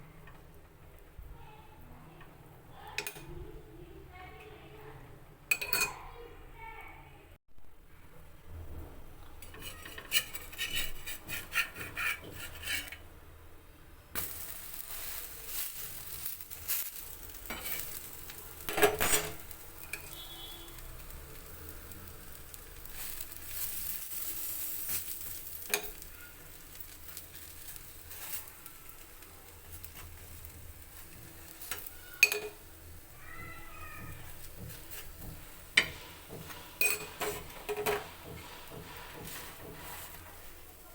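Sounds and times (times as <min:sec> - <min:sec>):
utensil clinking against bowl: 0:05.5 - 0:06.0, 0:31.6 - 0:32.6, 0:34.1 - 0:39.7
bread frying in hot oil: 0:08.6 - 0:40.9
spatula knocking on pan: 0:33.2 - 0:40.5.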